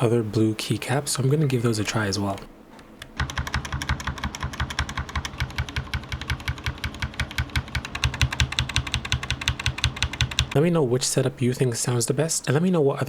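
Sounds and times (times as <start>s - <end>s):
fast mechanical keyboard typing: 3.0s - 10.6s.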